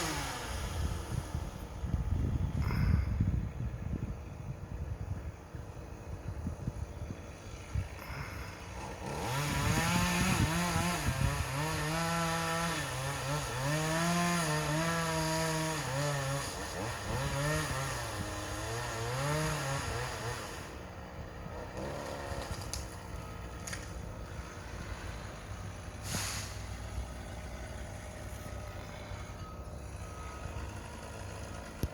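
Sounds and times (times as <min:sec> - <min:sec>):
chainsaw engine revving: 0:00.0 - 0:01.2, 0:08.0 - 0:20.8, 0:21.6 - 0:22.9, 0:30.4 - 0:31.9.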